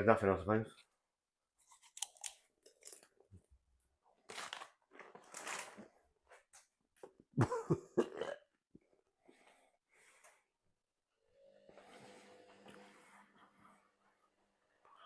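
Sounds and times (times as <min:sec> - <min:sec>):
harsh coughs: 0:07.4 - 0:08.5.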